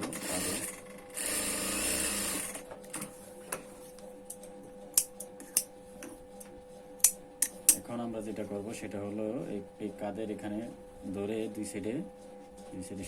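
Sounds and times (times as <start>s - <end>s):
sewing machine stitching: 0.0s - 2.6s.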